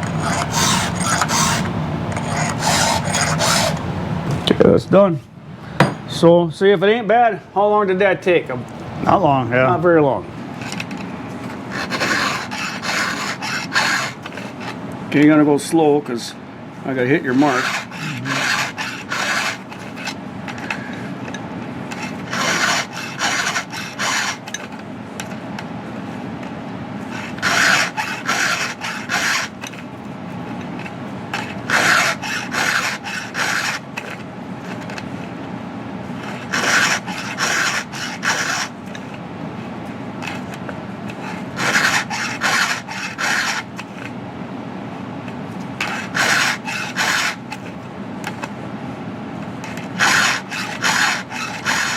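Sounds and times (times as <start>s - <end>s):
file rasping on chainsaw chain: 0.0s - 3.8s, 11.7s - 14.6s, 17.1s - 20.2s, 21.9s - 24.6s, 27.1s - 29.6s, 31.4s - 34.1s, 36.2s - 38.8s, 41.2s - 43.8s, 45.8s - 47.6s, 49.7s - 51.9s
steady low hum: 0.0s - 51.9s.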